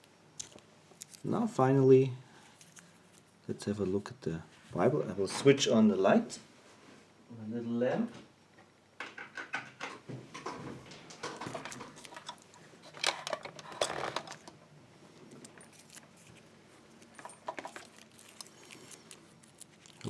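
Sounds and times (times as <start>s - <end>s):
rustling and clinking: 9.2s - 14.6s, 15.3s - 20.0s.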